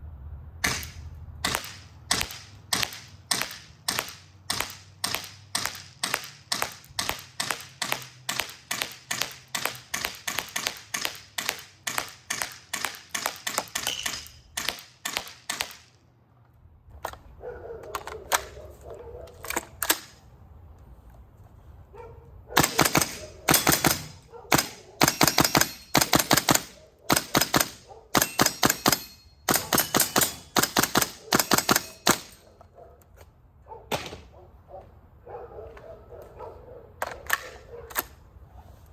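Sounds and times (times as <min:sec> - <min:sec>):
airsoft rifle shots: 0:00.6 - 0:16.0, 0:22.6 - 0:32.5, 0:33.9 - 0:34.3
airsoft rifle rapid bursts: 0:00.7 - 0:15.8, 0:22.6 - 0:32.4.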